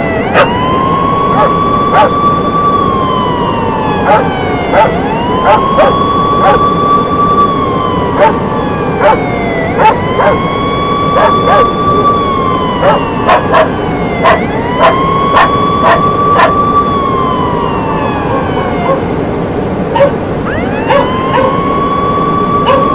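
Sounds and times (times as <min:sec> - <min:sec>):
warning siren wailing: 0:00.0 - 0:22.9
dogs barking: 0:00.3 - 0:00.6, 0:01.3 - 0:02.2, 0:04.0 - 0:06.6, 0:08.2 - 0:08.4, 0:09.0 - 0:10.5, 0:11.2 - 0:11.8, 0:12.8 - 0:16.6, 0:18.3 - 0:19.0, 0:19.9 - 0:20.2, 0:20.8 - 0:21.6, 0:22.6 - 0:22.9.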